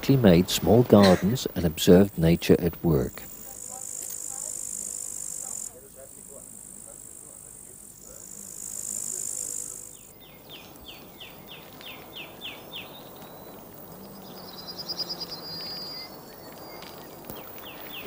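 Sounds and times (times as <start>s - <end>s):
insects chirring: 0.0s - 18.0s
bird singing falling notes: 9.8s - 18.0s.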